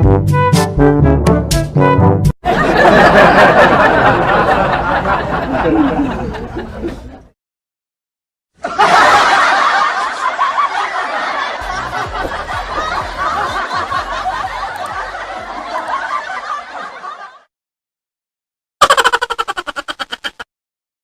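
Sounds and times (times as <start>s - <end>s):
crowd laughing: 2.4s - 7.4s, 8.6s - 17.5s, 18.8s - 20.4s.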